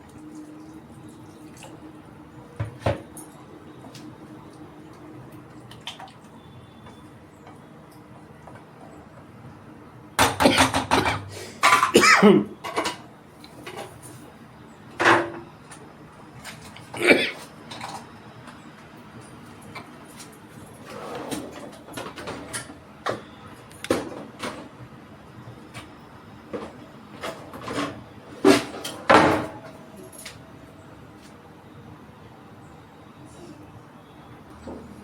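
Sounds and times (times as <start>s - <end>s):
utensils clattering against a pan: 10.2s - 14.0s.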